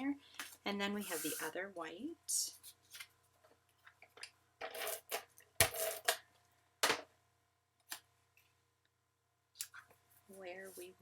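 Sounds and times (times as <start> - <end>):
paper rustling: 0.4 - 1.5.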